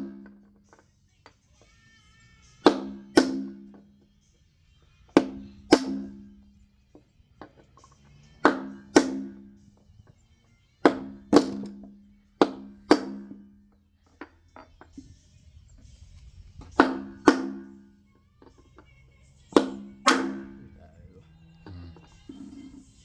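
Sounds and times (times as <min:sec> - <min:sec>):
hammer blows on metal: 0:02.6 - 0:04.0, 0:05.1 - 0:06.6, 0:08.4 - 0:09.9, 0:10.8 - 0:13.6, 0:16.5 - 0:18.1, 0:19.5 - 0:22.5.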